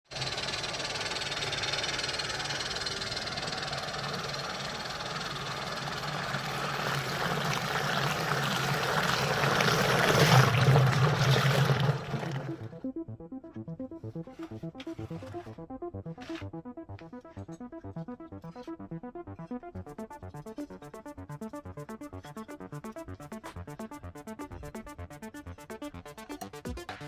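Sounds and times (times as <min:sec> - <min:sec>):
small electric motor churning water: 0:00.1 - 0:12.8.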